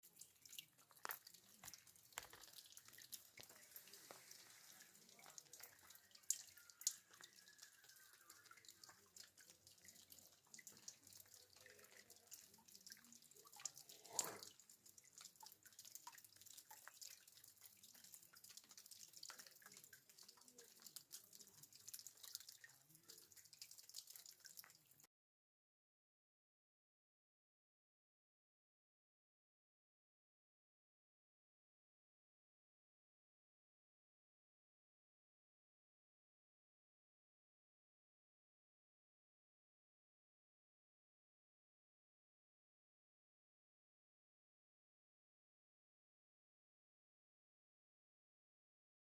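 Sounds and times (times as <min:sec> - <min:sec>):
water dripping from rock: 0:00.0 - 0:25.1.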